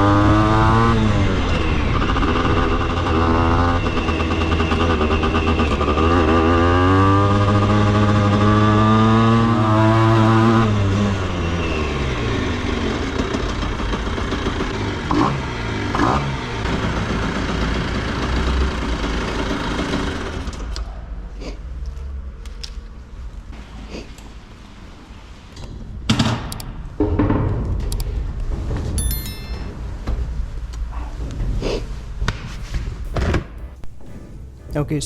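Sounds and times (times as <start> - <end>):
two-stroke motorcycle engine: 0.0 - 20.8.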